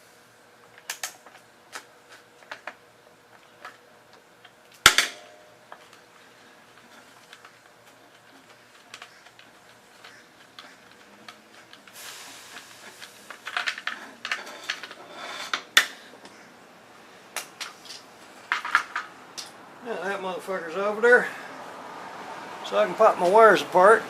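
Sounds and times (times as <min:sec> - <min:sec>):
tools and parts clicking and rattling: 0:06.7 - 0:16.4, 0:17.3 - 0:19.6.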